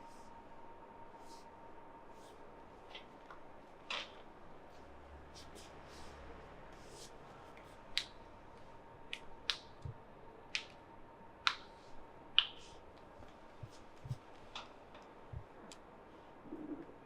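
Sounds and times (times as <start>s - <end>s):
sharp snapping clicks: 7.9s - 8.2s, 9.1s - 9.9s, 10.5s - 10.8s, 11.4s - 11.8s, 12.4s - 13.1s.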